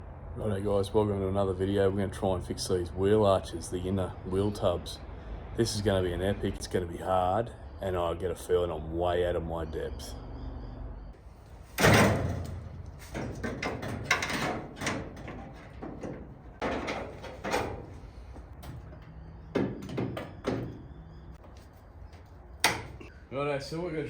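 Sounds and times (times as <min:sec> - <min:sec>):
irregular knocks and clunks: 0:11.7 - 0:23.1.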